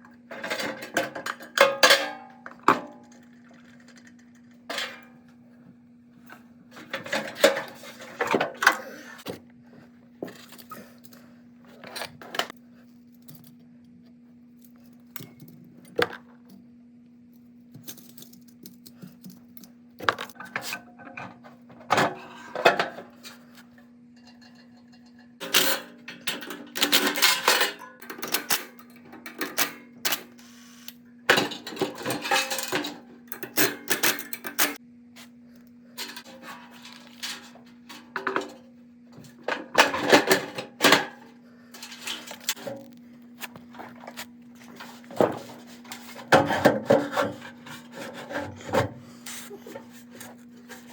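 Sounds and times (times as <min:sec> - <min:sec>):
steady low hum: 0:00.0 - 0:50.9
metal tools clinking and rattling: 0:24.2 - 0:30.2, 0:31.3 - 0:34.8, 0:39.2 - 0:42.9.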